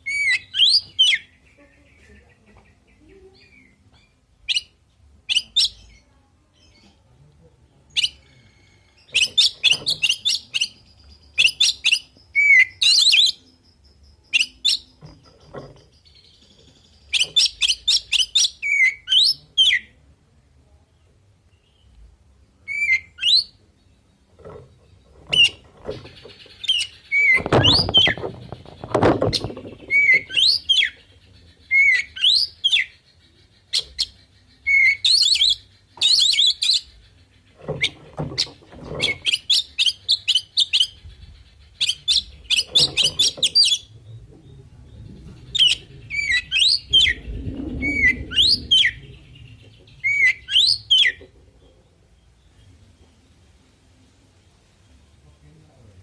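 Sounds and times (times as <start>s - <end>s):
bird singing whistles and chatter: 25.3s - 31.0s, 31.6s - 33.0s, 33.7s - 36.9s, 41.8s - 51.3s
low thumps: 27.4s - 30.2s, 42.7s - 50.0s.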